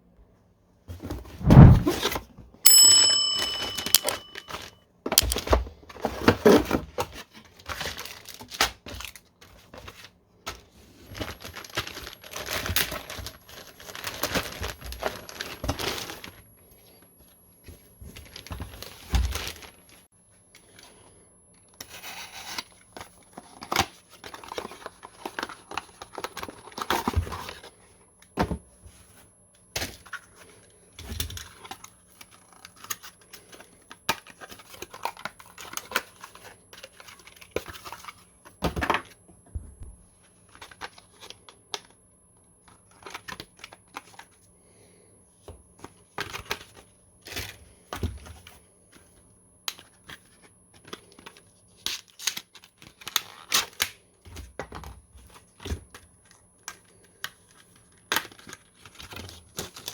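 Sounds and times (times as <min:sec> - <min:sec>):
brief metallic ring: 0:02.7 - 0:04.5
cardboard and plastic rustling: 0:04.5 - 0:16.4, 0:17.6 - 0:21.0, 0:21.9 - 0:41.9, 0:45.4 - 0:59.9.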